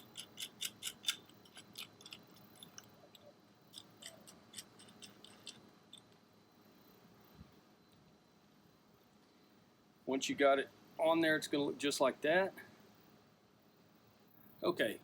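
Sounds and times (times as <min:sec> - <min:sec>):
nut clicking on a bolt: 0:00.0 - 0:02.9, 0:03.7 - 0:06.1.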